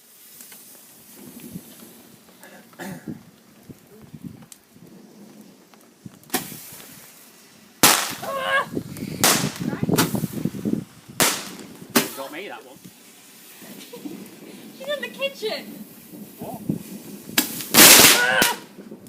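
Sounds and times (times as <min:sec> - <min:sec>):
fireworks bangs: 0:00.0 - 0:19.0
fireworks crackling: 0:00.0 - 0:19.0.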